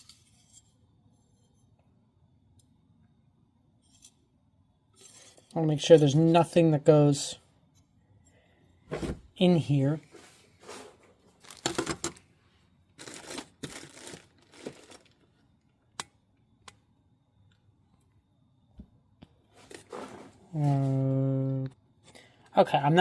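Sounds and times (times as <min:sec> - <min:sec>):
crinkling rustles: 0:10.0 - 0:12.3, 0:12.9 - 0:15.4, 0:19.5 - 0:20.6.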